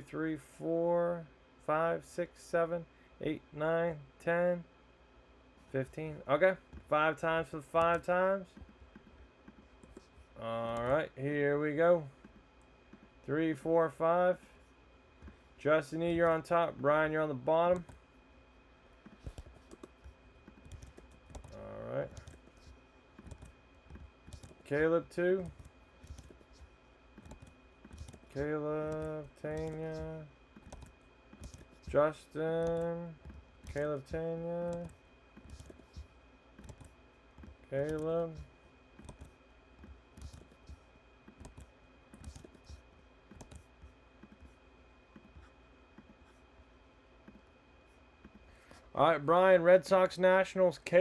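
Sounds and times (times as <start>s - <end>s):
computer keyboard clicks: 19.1s - 32.0s, 32.6s - 44.4s.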